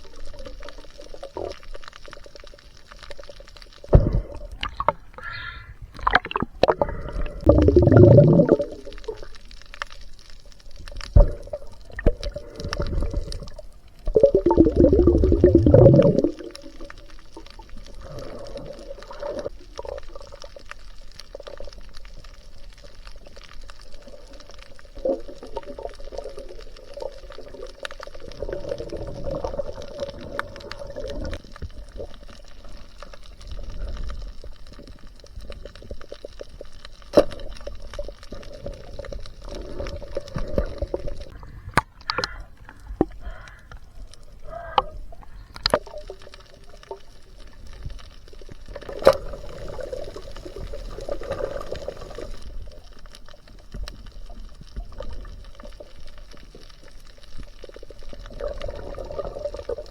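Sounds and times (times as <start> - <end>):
water gurgling: 0.0 - 59.9
water sloshing and bubbling: 0.0 - 59.9.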